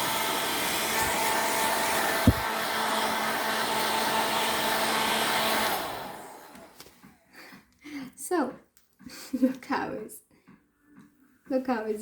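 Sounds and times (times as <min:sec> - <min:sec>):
hair dryer blowing: 0:00.0 - 0:07.0.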